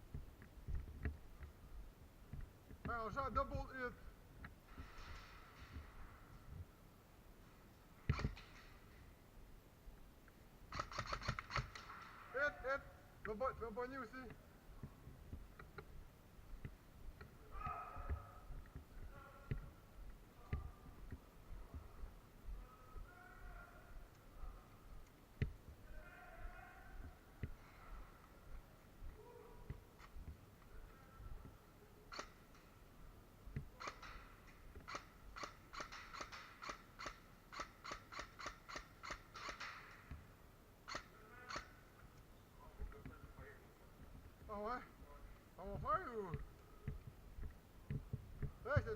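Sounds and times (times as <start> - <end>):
sharp clicks and knocks: 0.0 - 3.8, 8.0 - 9.1, 10.2 - 12.3, 18.0 - 22.6, 31.4 - 43.3, 45.6 - 48.9
distant voices calling: 16.5 - 32.7.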